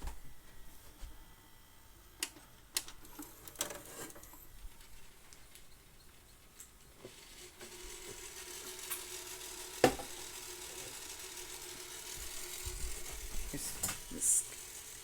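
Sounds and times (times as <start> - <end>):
tape hiss: 0.0 - 7.7.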